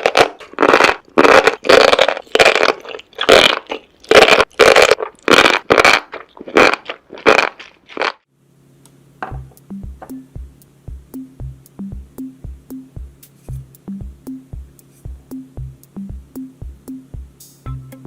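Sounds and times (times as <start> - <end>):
crunchy bites and chewing: 0.0 - 8.3
drum machine beat with bass: 9.2 - 18.0.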